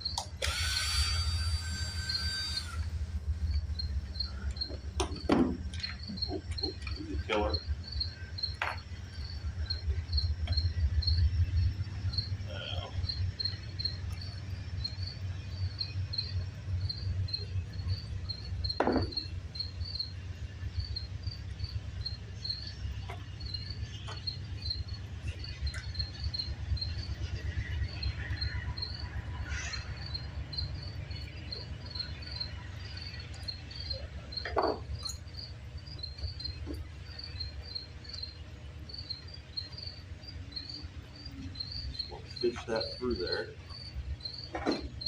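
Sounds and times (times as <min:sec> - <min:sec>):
cricket chirping: 0:00.0 - 0:45.0
sharp knocks: 0:18.8 - 0:19.3.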